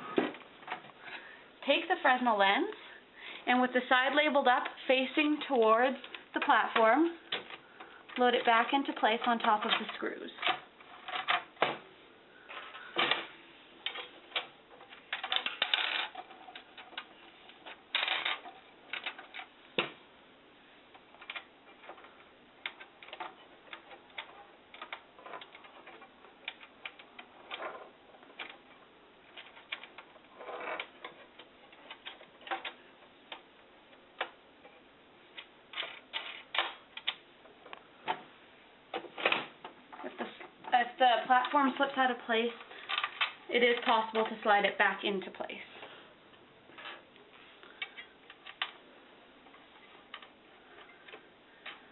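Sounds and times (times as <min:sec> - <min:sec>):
plastic and glass parts clicking: 0:12.6 - 0:19.9, 0:20.9 - 0:33.5, 0:41.4 - 0:44.4.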